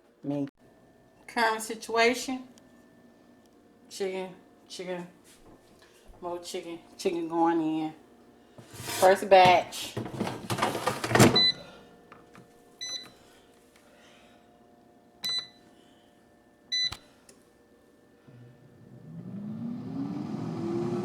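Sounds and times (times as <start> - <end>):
air fryer fan whining: 7.0 - 21.0
short beeps from control panel: 12.8 - 13.1, 15.2 - 15.6, 16.7 - 17.0.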